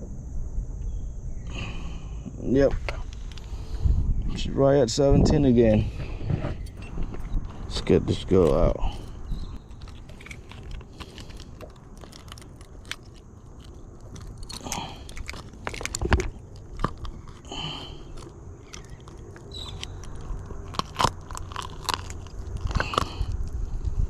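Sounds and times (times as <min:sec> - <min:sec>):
low steady rumble: 0:00.0 - 0:24.0
handling crackles and scrapes: 0:02.7 - 0:24.0.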